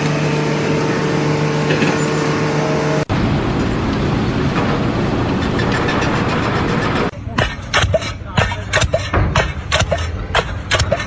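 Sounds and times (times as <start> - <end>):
motor humming: 0.0 - 8.4
rough machinery noise: 0.0 - 11.0.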